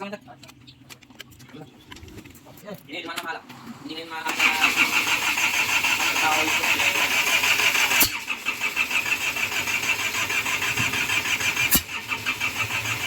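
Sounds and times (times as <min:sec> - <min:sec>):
engine cranking without starting: 0:03.5 - 0:13.0.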